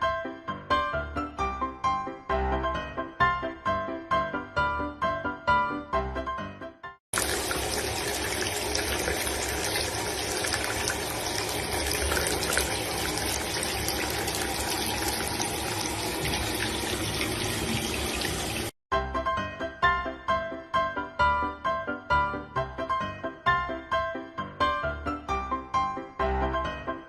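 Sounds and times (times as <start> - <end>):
running water rushing: 7.2 - 18.8.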